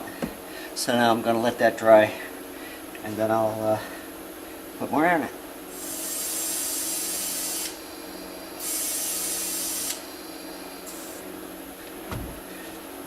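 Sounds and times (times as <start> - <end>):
steady low hum: 0.0 - 13.0
compressed air hissing into tire: 5.7 - 7.8, 8.6 - 10.1, 10.8 - 11.3.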